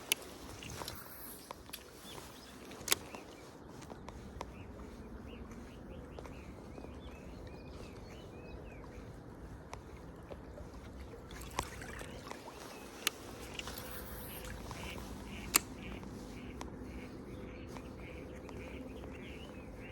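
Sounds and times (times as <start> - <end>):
water lapping at a kayak hull: 0.0 - 19.9.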